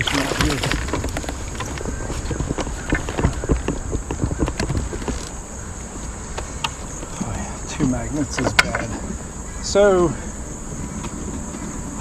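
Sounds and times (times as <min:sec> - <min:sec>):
knocks and clunks on kayak: 0:00.0 - 0:07.2, 0:07.8 - 0:09.1
water and wind rumble: 0:00.0 - 0:12.0.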